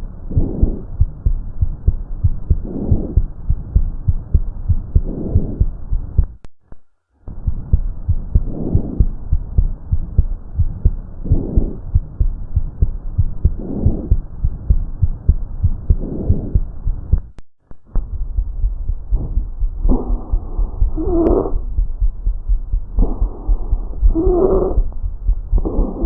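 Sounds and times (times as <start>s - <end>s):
heartbeat thumping: 0.0s - 6.4s, 7.3s - 26.0s
breath sounds through stethoscope: 0.3s - 4.2s, 4.9s - 6.3s, 8.3s - 9.4s, 11.2s - 14.8s, 15.8s - 17.2s, 17.9s - 26.0s.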